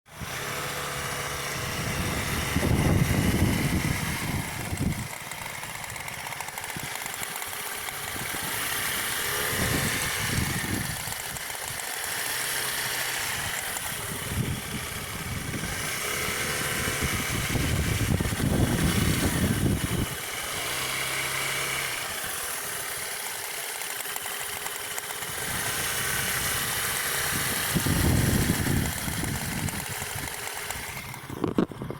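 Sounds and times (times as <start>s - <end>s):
scooter engine running: 0.1s - 31.9s
loud low rumbling: 0.2s - 6.5s, 13.4s - 20.7s.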